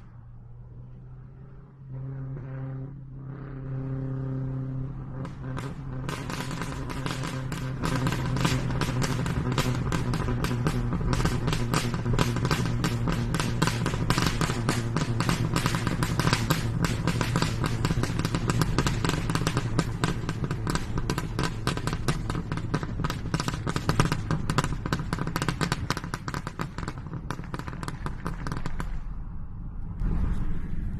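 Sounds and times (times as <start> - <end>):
rapid popping and clicking: 5.3 - 29.0
steady low hum: 26.8 - 30.9.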